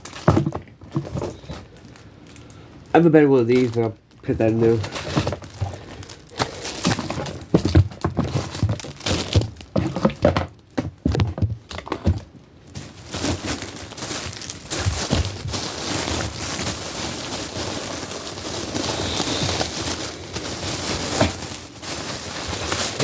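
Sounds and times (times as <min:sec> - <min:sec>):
bag crinkling and rustling: 0:00.0 - 0:23.0.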